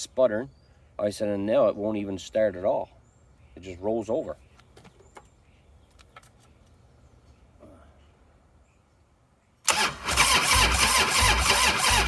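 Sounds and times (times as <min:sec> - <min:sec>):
motorcycle engine cranking: 0:09.7 - 0:12.0.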